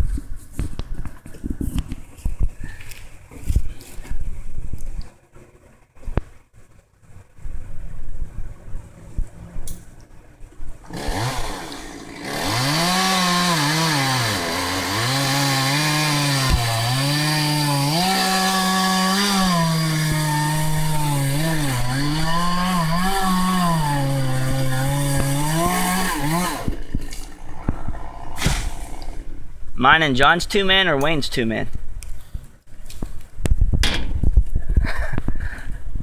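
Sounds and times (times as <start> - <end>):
chainsaw cutting wood: 10.8 - 27.3.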